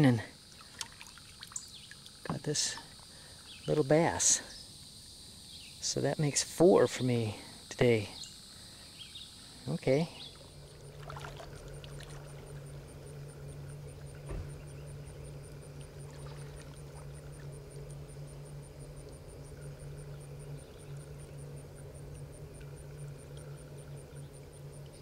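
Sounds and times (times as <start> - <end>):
insect ticking: 0.0 - 6.4, 7.3 - 25.0
low steady hum: 0.0 - 25.0
trickling water: 0.1 - 3.9, 10.3 - 25.0.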